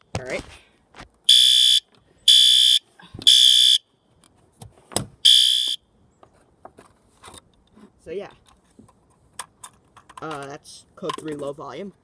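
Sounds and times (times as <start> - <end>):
fire alarm horn beeps: 1.3 - 3.8, 5.2 - 5.8.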